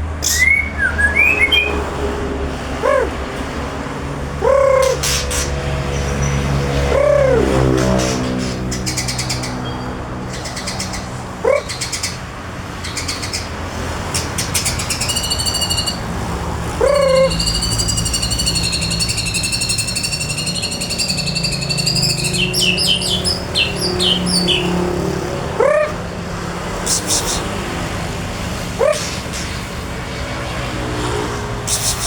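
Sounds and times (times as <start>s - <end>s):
songbird singing: 0.2s - 1.9s, 14.4s - 16.1s, 16.7s - 26.0s
loud low swooping bird call: 2.8s - 3.2s, 4.4s - 5.7s, 6.7s - 8.3s, 16.7s - 24.9s.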